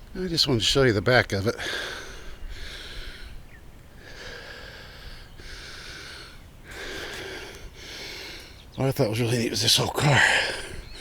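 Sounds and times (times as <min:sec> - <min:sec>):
person breathing heavily: 0:01.6 - 0:03.4, 0:04.0 - 0:08.6.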